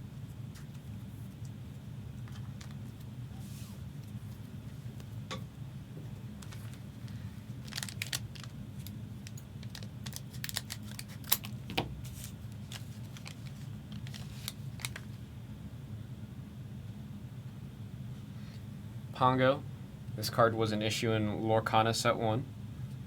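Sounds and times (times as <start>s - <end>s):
cards clicking and rustling: 6.4s - 8.6s, 9.4s - 15.1s.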